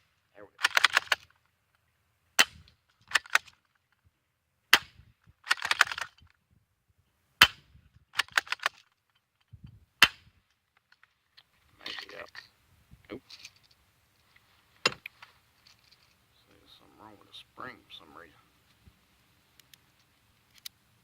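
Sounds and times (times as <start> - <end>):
gun mechanical clicks and rattling: 0.5 - 1.8, 2.4 - 4.0, 4.8 - 6.4, 7.9 - 9.6, 10.4 - 12.5, 13.2 - 16.2, 19.6 - 20.8
bb pistol shots snapping: 0.6 - 1.3, 2.4 - 3.6, 4.7 - 6.2, 7.4 - 8.8, 10.0 - 10.4.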